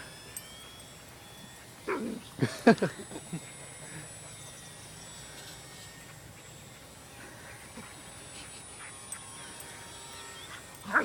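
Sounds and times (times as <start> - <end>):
dog yelping: 10.5 - 11.0.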